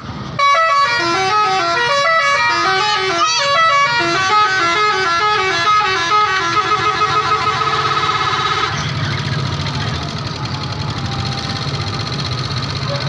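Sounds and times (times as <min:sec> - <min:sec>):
multi-tone musical bus horn: 0:00.3 - 0:09.2.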